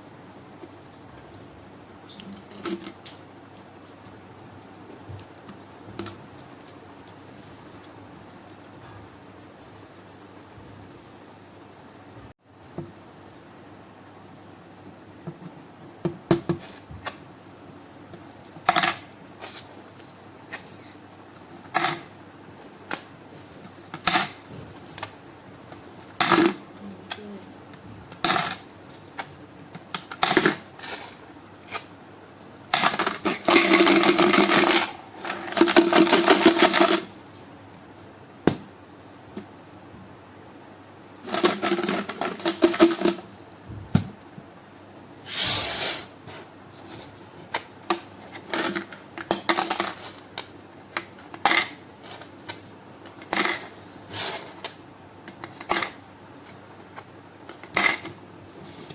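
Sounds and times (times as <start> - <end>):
coins clinking into piggy bank: 32.7 - 37.1, 41.3 - 43.2, 53.3 - 53.8, 55.5 - 56.0, 57.6 - 58.2.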